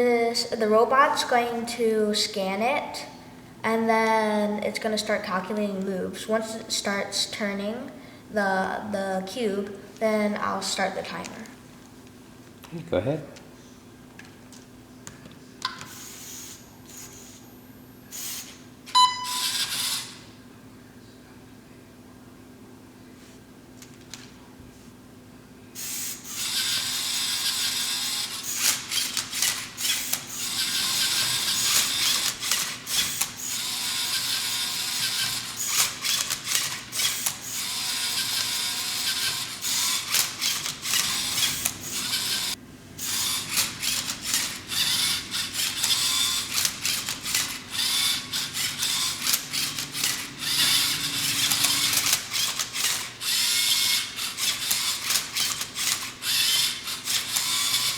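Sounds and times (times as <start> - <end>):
motors whirring: 15.8 - 18.6, 19.3 - 20.2, 25.8 - 57.9.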